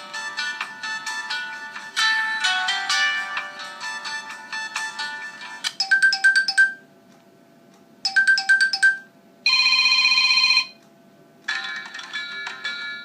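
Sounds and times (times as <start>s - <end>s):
ringtone melody: 0.0s - 6.8s, 8.1s - 10.7s
four-note ringtone chime: 5.8s - 6.8s, 8.1s - 10.7s.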